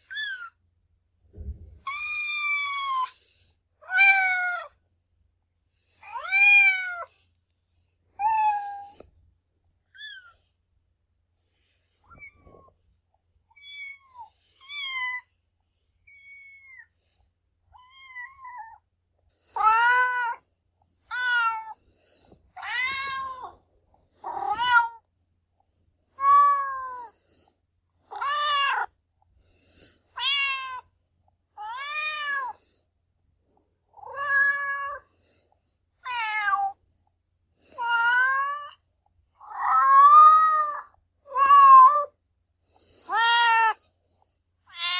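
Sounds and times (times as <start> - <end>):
cat meowing: 6.0 - 7.1, 30.2 - 30.8, 43.1 - 43.8, 44.7 - 44.9.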